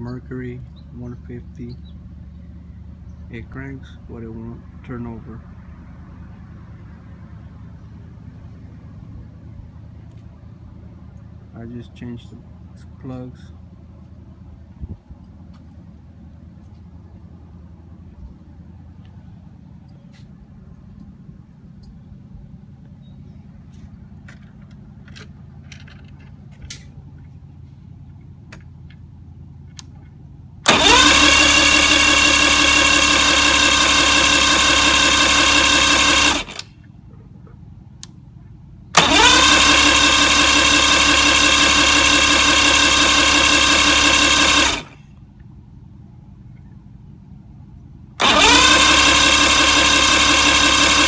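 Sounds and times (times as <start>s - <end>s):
outboard motor electric starter cranking: 30.6s - 36.8s, 38.9s - 45.0s, 48.2s - 51.0s.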